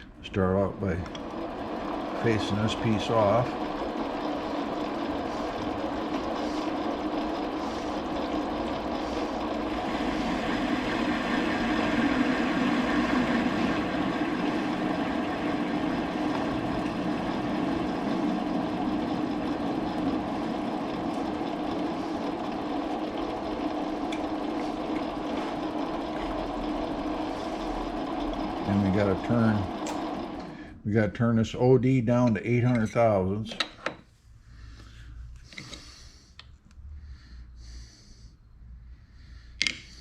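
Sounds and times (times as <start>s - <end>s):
metal lathe running: 0.3s - 30.8s.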